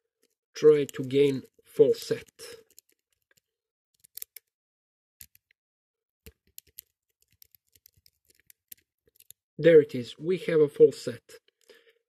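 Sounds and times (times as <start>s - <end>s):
lock pick clicking in padlock: 2.6s - 4.6s, 5.2s - 5.6s, 6.2s - 9.4s.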